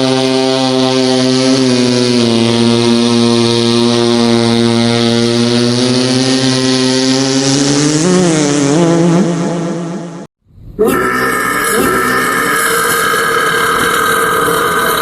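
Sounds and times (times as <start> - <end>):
long low burp: 10.6 - 15.0.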